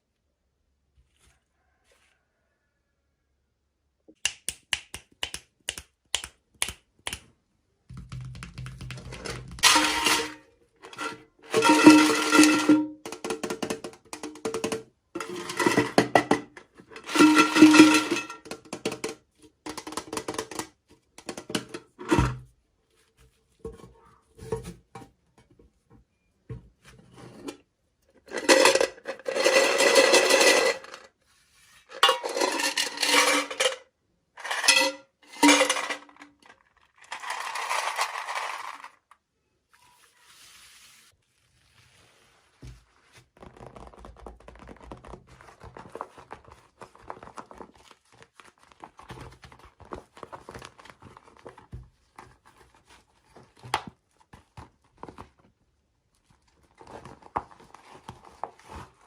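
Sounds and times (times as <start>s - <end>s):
packaging rattling and crinkling: 43.4s - 55.5s, 56.2s - 59.0s.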